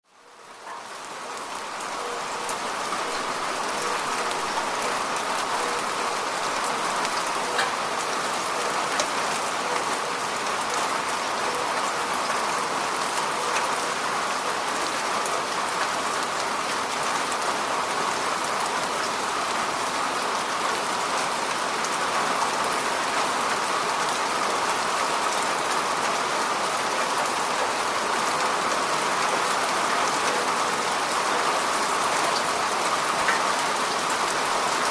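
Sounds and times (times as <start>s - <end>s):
steady rain hiss: 0.1s - 34.9s
raindrops ticking: 0.6s - 10.8s.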